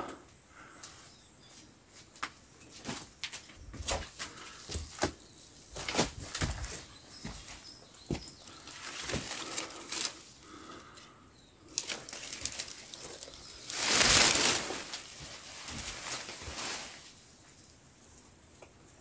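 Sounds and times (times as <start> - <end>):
footsteps crunching and rustling: 0.9 - 10.2, 12.2 - 17.2.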